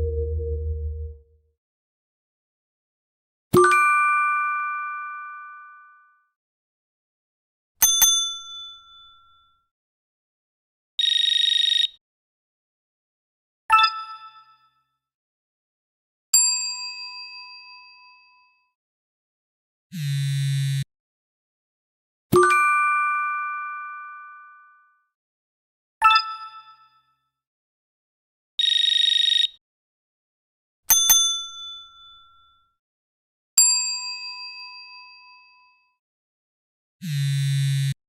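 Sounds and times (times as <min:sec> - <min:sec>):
bell-like ding: 0:00.0 - 0:01.2, 0:07.8 - 0:09.5, 0:30.9 - 0:32.6
steady high beep: 0:00.0 - 0:01.2
notification buzz: 0:00.0 - 0:01.3.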